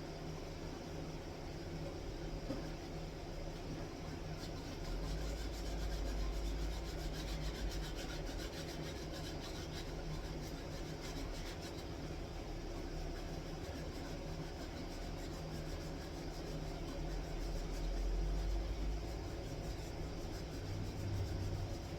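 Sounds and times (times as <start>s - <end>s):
steady low hum: 0.0s - 21.9s.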